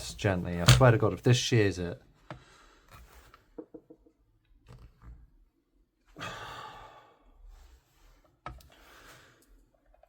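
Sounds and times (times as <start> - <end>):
metal parts clicking: 0.6 - 1.0.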